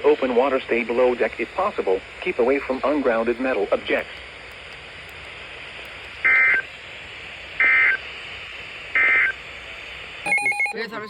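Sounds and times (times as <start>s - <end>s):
radio hiss: 0.0s - 11.0s
digital data tone bursts: 10.2s - 11.0s.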